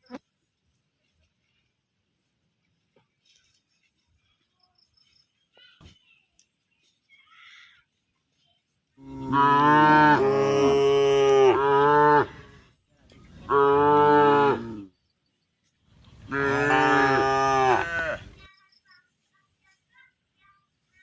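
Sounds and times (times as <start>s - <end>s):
cow mooing: 9.0s - 12.4s, 13.5s - 14.9s, 16.2s - 18.2s.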